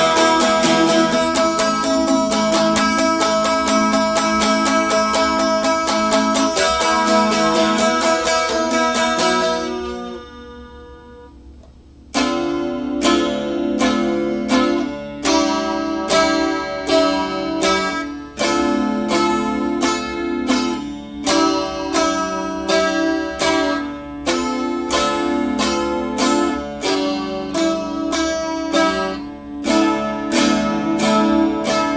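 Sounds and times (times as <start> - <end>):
guitar strumming music: 0.0 - 31.9.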